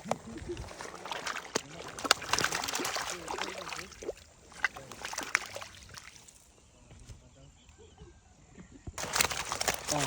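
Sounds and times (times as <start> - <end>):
water dripping: 0.0 - 6.4
water splashing and sloshing: 0.0 - 6.6, 9.0 - 10.0.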